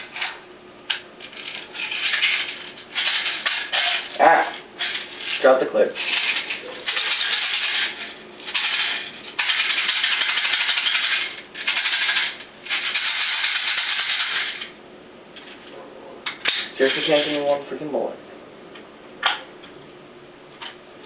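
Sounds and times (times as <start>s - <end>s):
bbs rattling in shaken magazine: 1.3s - 4.2s, 6.0s - 14.7s.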